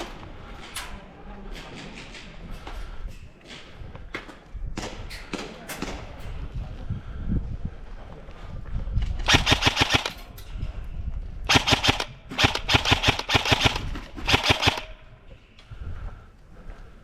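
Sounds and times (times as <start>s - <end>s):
airsoft gun firing bursts: 9.3s - 10.4s, 11.5s - 15.2s.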